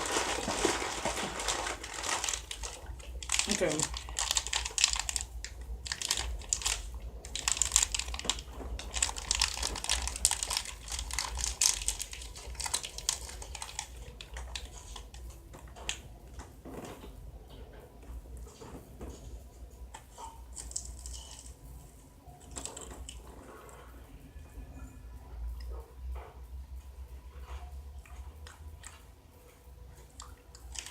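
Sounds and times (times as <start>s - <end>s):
plastic packaging crinkling: 0.0s - 16.0s, 20.2s - 21.6s, 30.5s - 30.9s.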